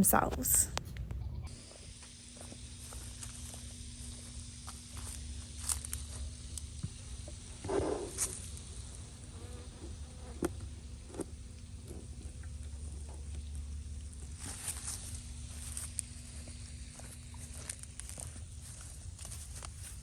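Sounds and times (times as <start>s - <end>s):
bees buzzing: 7.0s - 11.2s.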